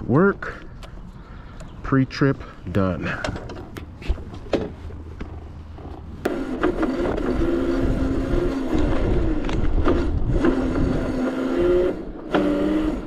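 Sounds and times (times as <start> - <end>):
tyre and wind rumble: 0.0 - 12.8
electric motorbike motor whining: 6.2 - 13.0.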